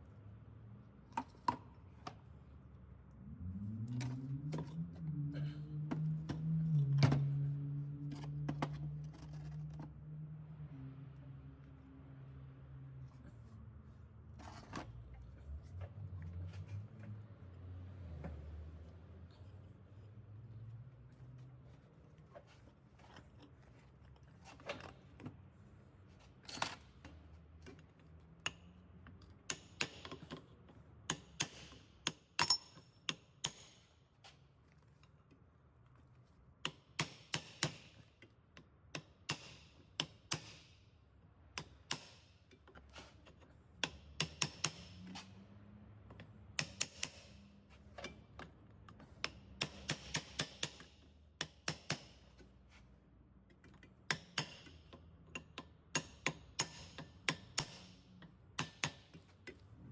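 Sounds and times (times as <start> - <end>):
hand tools clicking and knocking: 31.1 - 33.8, 46.1 - 47.3, 49.2 - 52.4, 53.5 - 59.6.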